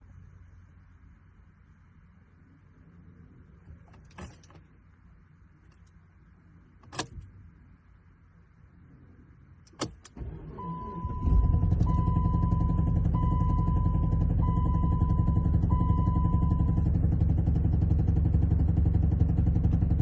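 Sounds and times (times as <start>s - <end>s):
car engine cranking and starting: 9.7s - 20.0s
car warning chime: 10.5s - 17.0s.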